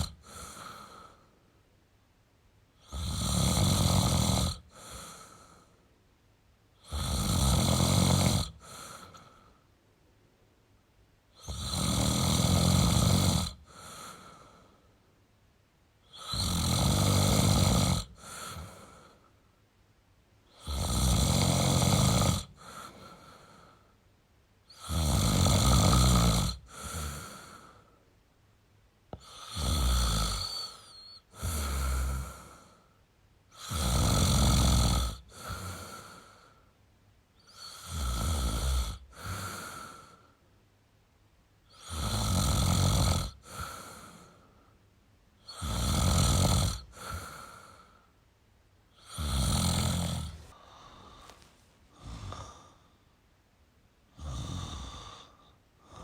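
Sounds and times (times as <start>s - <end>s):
man snoring: 0.0s - 1.3s, 2.8s - 5.7s, 6.8s - 9.5s, 11.3s - 14.7s, 16.0s - 19.2s, 20.5s - 23.8s, 24.7s - 27.9s, 29.1s - 32.8s, 33.5s - 36.6s, 37.4s - 40.3s, 41.7s - 44.4s, 45.4s - 48.0s, 49.0s - 51.3s, 51.9s - 52.9s, 54.1s - 56.0s.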